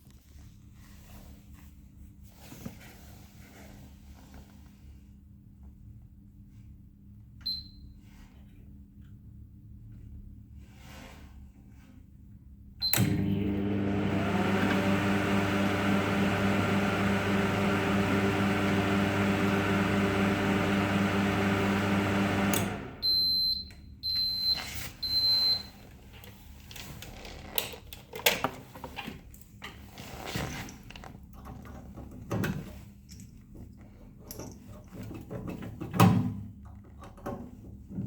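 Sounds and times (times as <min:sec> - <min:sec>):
microwave humming: 0:12.8 - 0:23.3.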